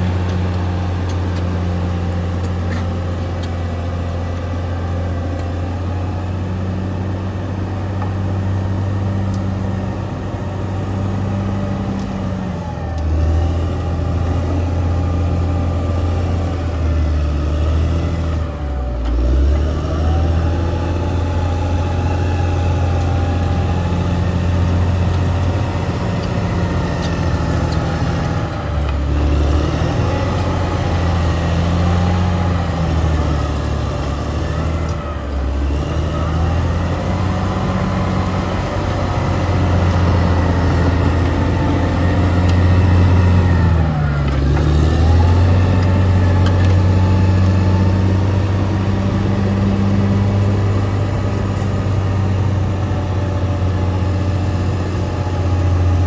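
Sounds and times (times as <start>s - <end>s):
bulldozer diesel engine running: 0.0s - 56.0s.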